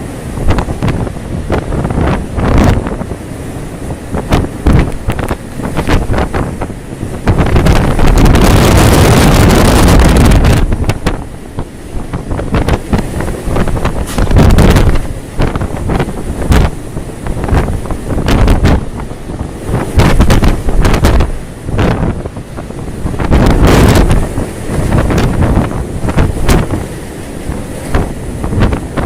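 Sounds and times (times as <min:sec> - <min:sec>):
storm wind buffeting microphone: 0:00.0 - 0:29.0
waves and spray: 0:00.0 - 0:29.0.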